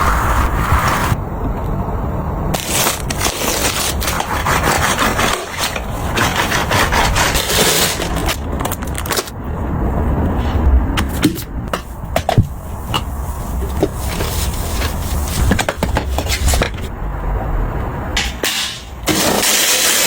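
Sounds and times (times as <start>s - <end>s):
rubbing and scraping on surface: 0.0s - 1.2s, 2.6s - 8.4s, 10.4s - 16.9s.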